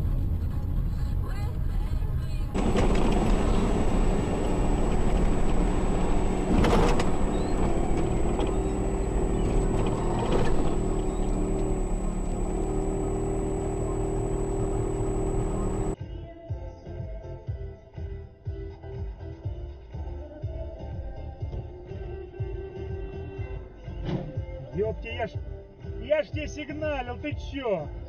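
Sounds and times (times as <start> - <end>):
car engine and road noise: 0.0 - 16.0
steady high whine: 2.6 - 16.0.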